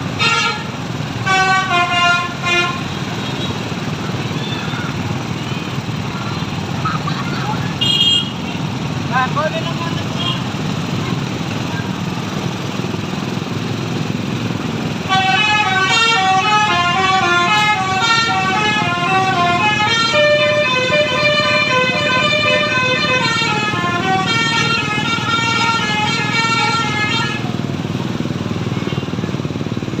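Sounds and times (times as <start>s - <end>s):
bus musical horn playing a tune: 0.0s - 3.6s, 7.8s - 8.5s, 15.0s - 27.7s
engine running: 0.0s - 30.0s.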